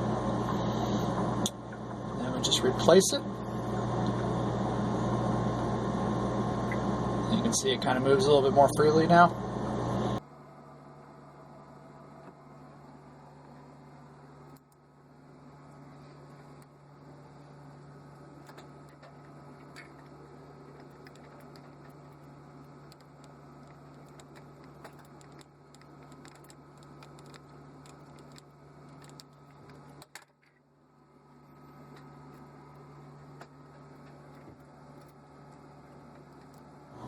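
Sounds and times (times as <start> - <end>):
steady low hum: 0.0 - 37.0
small metal parts clicking: 18.5 - 30.6.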